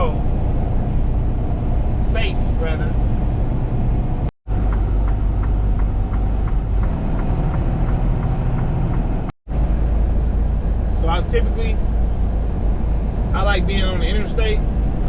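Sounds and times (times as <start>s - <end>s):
truck engine rumble inside cab: 0.0s - 15.0s.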